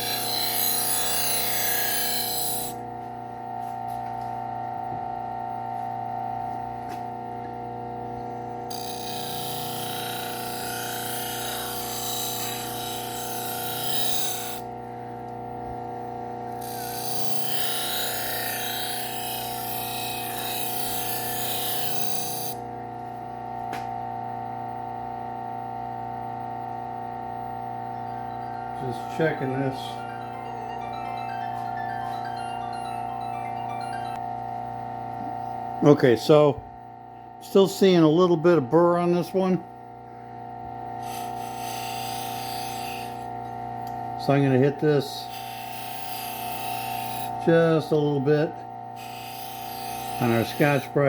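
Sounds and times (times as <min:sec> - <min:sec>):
belt sander motor hum: 0:00.0 - 0:23.9, 0:37.4 - 0:51.0.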